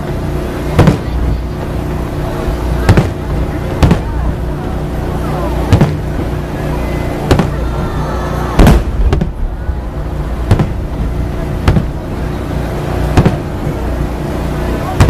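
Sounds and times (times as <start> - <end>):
fireworks booming: 0.0 - 15.0
low background hum: 0.0 - 15.0.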